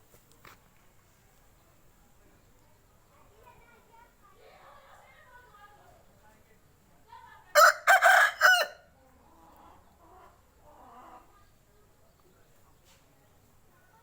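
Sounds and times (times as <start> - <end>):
rooster crowing: 7.6 - 8.8.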